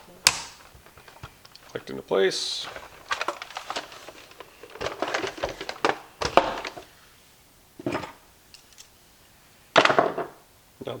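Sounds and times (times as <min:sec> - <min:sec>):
plastic parts clicking and knocking: 0:00.2 - 0:02.0, 0:02.6 - 0:06.8.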